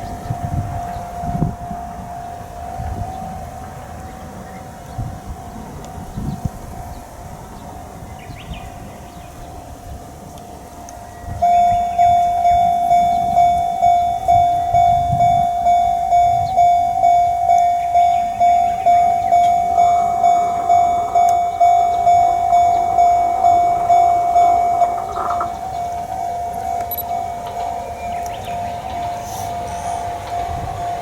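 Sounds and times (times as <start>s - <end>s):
level crossing alarm: 0.0s - 8.0s, 10.2s - 31.0s
train hiss: 23.8s - 31.0s.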